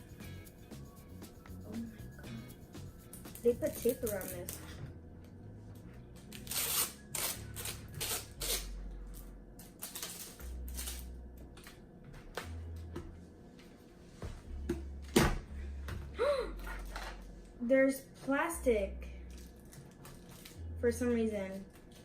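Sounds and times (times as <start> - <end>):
faint background music: 0.0 - 22.0
plastic package tearing: 6.3 - 11.1, 19.3 - 20.6.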